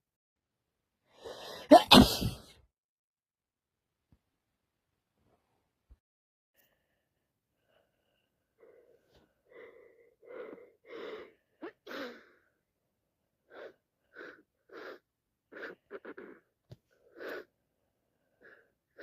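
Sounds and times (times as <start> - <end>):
person sneezing: 1.4 - 2.5
gasping breaths: 7.6 - 12.5.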